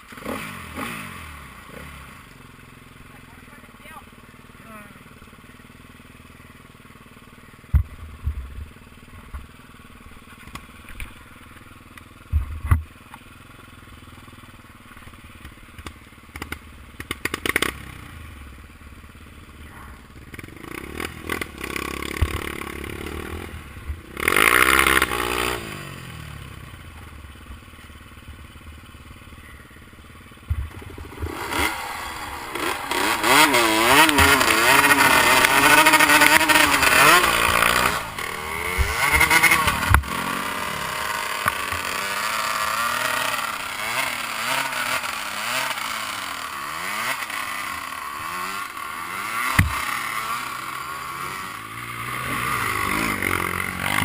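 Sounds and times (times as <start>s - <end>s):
motorcycle engines revving past: 0.0s - 2.4s, 16.4s - 18.6s, 19.5s - 27.2s, 28.8s - 54.0s.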